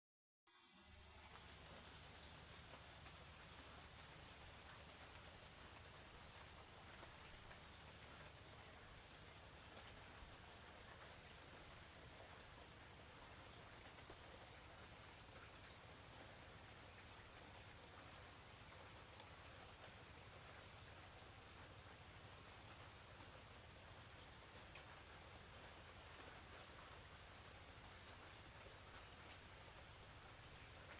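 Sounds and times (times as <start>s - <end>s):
light rain hiss: 0.5s - 30.9s
insect chirps: 14.4s - 30.9s.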